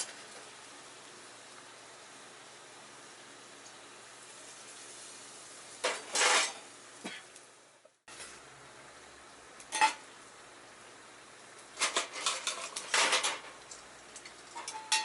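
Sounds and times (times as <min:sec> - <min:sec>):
food sizzling in a frying pan: 0:00.0 - 0:15.0
utensil scraping and clinking pan: 0:05.8 - 0:06.7, 0:11.8 - 0:13.4, 0:14.6 - 0:15.0.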